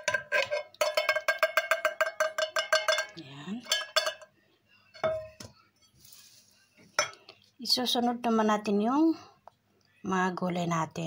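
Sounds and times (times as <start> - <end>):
spoon scraping metal can: 0.0 - 3.1.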